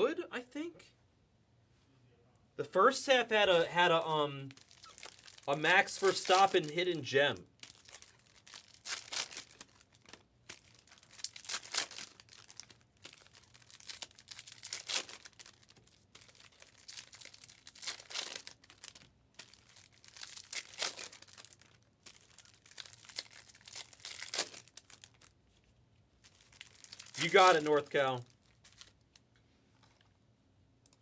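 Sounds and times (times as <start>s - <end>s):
card pack wrappers tearing: 3.4s - 25.3s, 26.3s - 29.0s.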